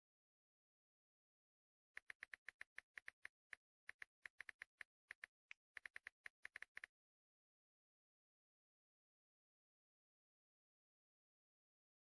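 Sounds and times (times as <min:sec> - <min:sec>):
text typing clicks: 0:02.0 - 0:06.9.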